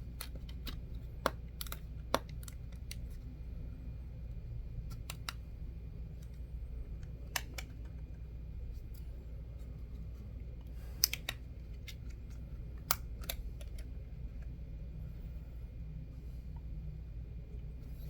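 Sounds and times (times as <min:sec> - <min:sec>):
steady low hum: 0:00.0 - 0:18.0
batteries clicking in compartment: 0:00.1 - 0:03.2, 0:04.8 - 0:05.5, 0:07.0 - 0:08.1, 0:10.6 - 0:14.5.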